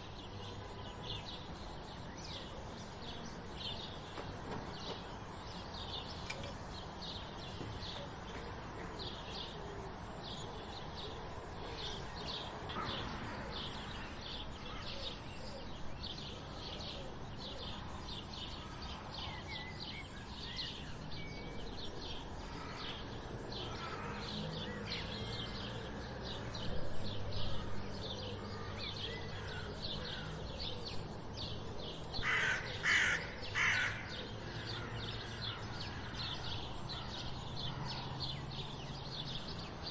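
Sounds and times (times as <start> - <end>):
small birds chirping: 0.0 - 39.9
loud harsh bird calls: 32.2 - 38.8.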